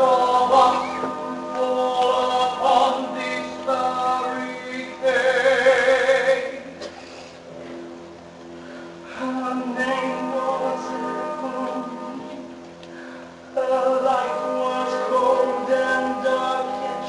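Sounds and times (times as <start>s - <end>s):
person singing ballad: 0.0s - 6.7s, 9.0s - 12.4s, 13.5s - 17.0s
orchestral accompaniment: 0.0s - 17.0s.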